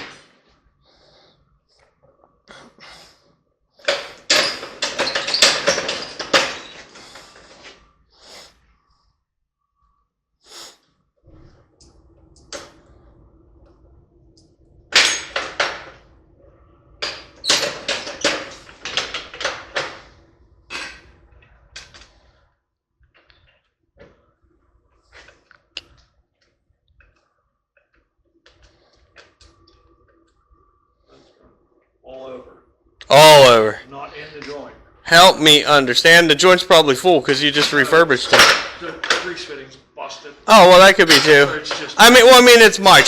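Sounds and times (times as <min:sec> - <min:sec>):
sharp metal knocking and clattering: 0:03.8 - 0:06.8, 0:14.9 - 0:16.0, 0:37.4 - 0:39.4, 0:40.9 - 0:42.2
faint steady hum: 0:10.9 - 0:22.4.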